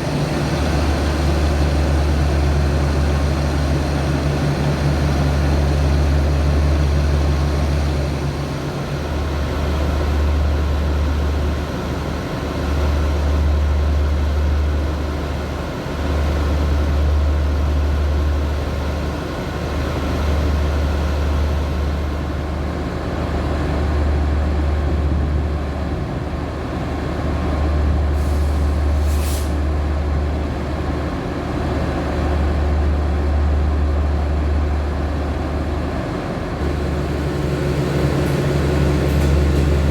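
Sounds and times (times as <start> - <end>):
locomotive engine rumbling: 0.0 - 39.9
short hiss: 28.2 - 29.6.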